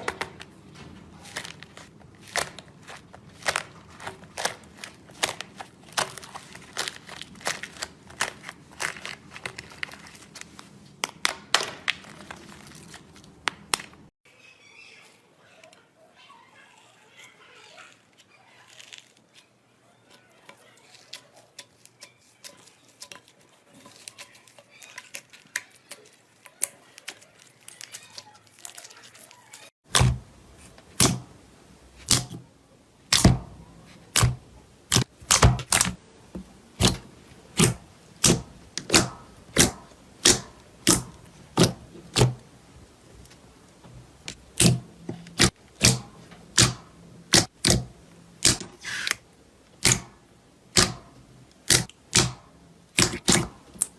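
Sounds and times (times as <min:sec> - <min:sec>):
slime crackling softly: 0:01.0 - 0:10.9, 0:15.0 - 0:29.8.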